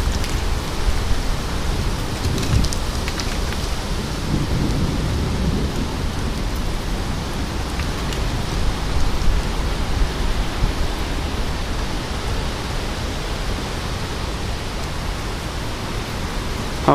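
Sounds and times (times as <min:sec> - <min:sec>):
raindrops ticking: 0:00.0 - 0:12.0
steady rain: 0:00.0 - 0:16.9
wind rumbling on microphone: 0:00.0 - 0:16.9.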